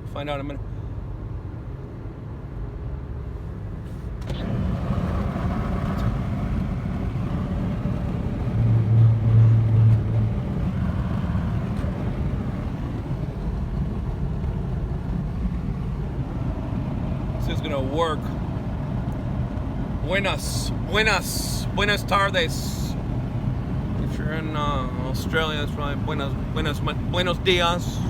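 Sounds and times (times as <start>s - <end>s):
car engine and road rumble: 0.0s - 28.0s.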